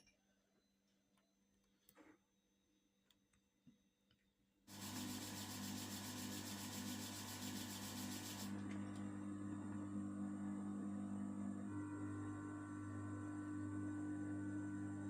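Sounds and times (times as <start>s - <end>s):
sewing machine running: 4.7s - 9.0s.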